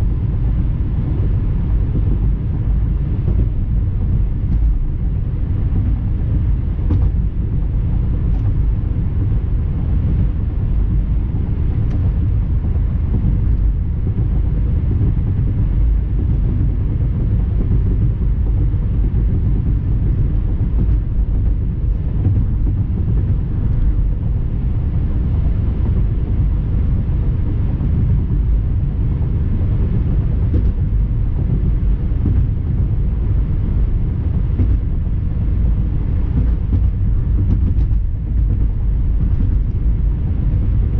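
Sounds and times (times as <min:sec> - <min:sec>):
car engine rumble: 0:00.0 - 0:40.9.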